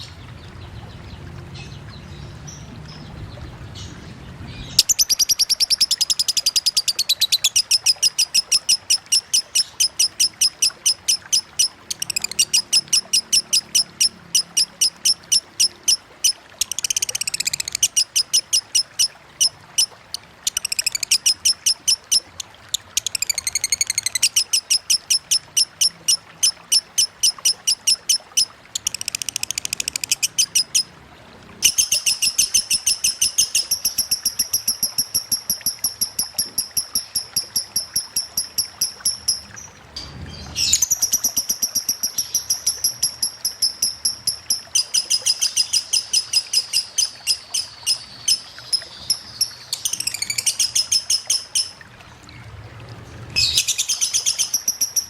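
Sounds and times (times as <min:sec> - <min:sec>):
bird warbling: 0:04.6 - 0:30.9, 0:31.6 - 0:51.8
lovebird rapid high chirps: 0:04.7 - 0:30.9, 0:31.6 - 0:39.7, 0:40.3 - 0:51.8, 0:53.4 - 0:55.0.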